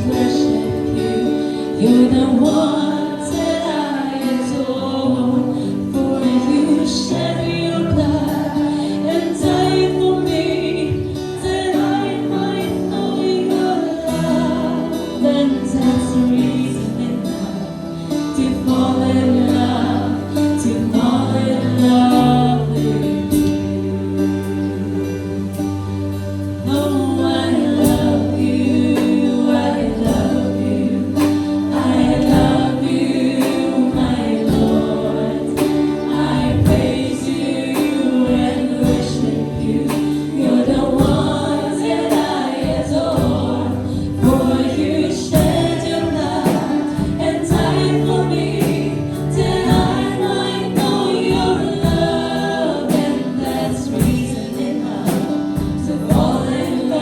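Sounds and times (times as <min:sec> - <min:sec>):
group of voices singing: 0:00.0 - 0:57.0
worship band playing: 0:00.0 - 0:57.0
steady drum beat: 0:26.8 - 0:57.0.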